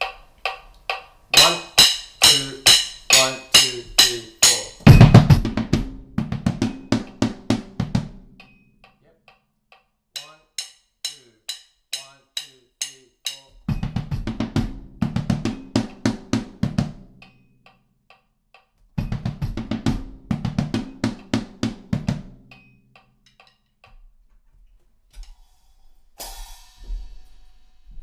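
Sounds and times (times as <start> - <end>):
drum call phrase: 1.3 - 8.2, 10.2 - 16.9.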